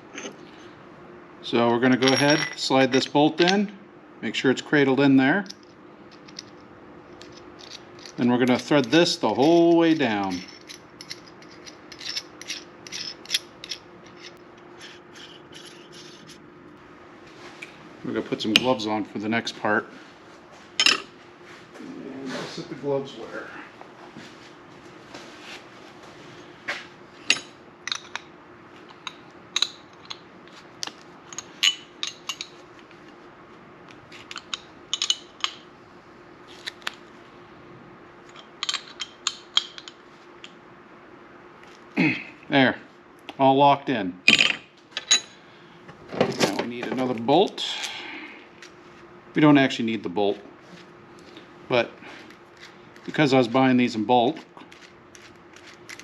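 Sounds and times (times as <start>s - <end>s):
faint steady hum: 0.0s - 56.0s.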